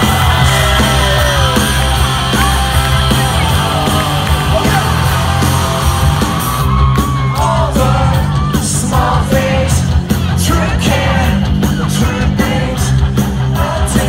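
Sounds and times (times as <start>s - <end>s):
heavy bass and drums: 0.0s - 14.0s
live rock band playing loudly: 0.0s - 14.0s.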